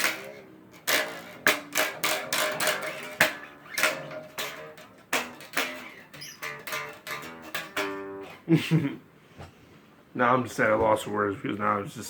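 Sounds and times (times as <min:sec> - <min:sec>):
bass guitar notes plucked: 0:00.0 - 0:08.9.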